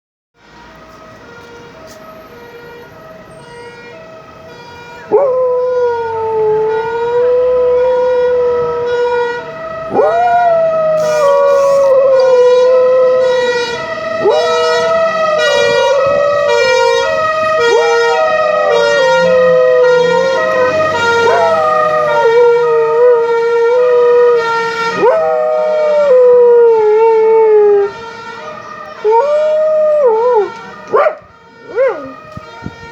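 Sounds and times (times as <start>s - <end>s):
two-tone fire siren: 0.4s - 32.9s
dog howling: 9.9s - 13.2s, 14.2s - 15.1s, 17.0s - 24.1s, 25.0s - 27.9s, 29.0s - 32.2s.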